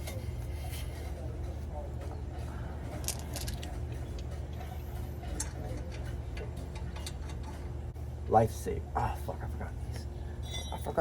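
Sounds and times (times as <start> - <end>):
steady low hum: 0.0 - 11.0
small metal parts clicking: 3.0 - 4.3.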